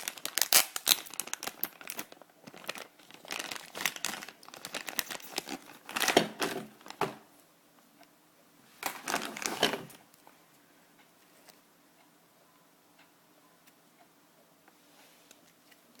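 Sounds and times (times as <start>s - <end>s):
packaging crinkling and crackling: 0.0s - 7.3s, 8.8s - 10.0s.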